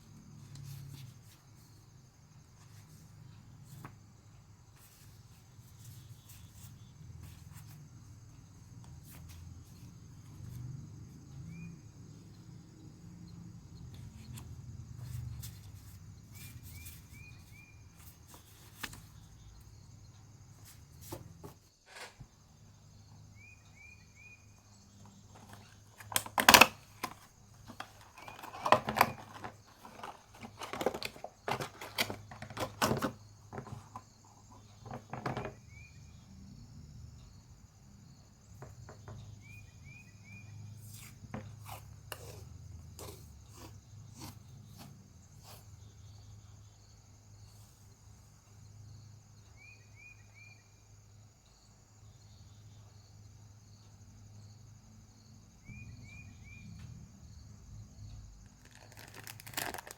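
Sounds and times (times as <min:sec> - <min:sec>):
cricket-like trill: 0:01.5 - 0:59.9
packaging crinkling: 0:58.4 - 0:59.9.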